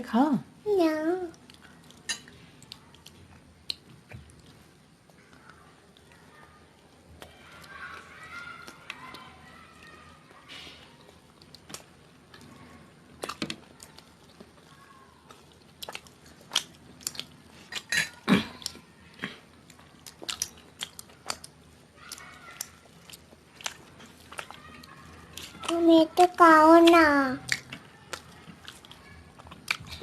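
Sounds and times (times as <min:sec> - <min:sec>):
person chewing food: 0:01.3 - 0:09.3, 0:10.7 - 0:30.0.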